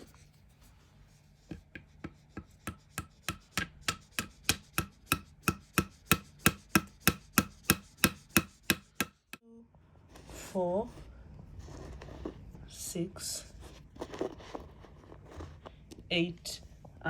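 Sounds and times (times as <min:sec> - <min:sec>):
hammer knocking: 0:01.5 - 0:09.4.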